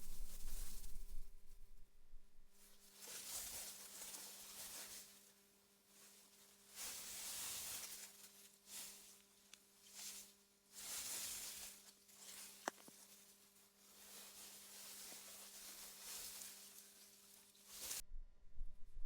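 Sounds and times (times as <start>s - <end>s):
wind through grass: 0.0s - 2.8s
faint low hum: 0.0s - 2.9s, 13.1s - 19.0s.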